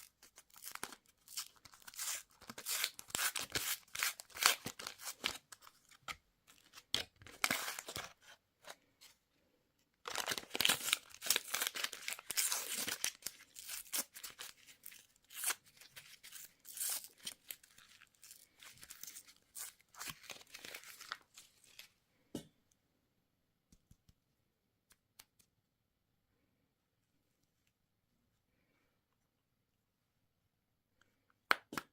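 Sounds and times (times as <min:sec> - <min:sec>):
candy wrapper crinkling: 0:00.0 - 0:08.2, 0:10.0 - 0:21.9.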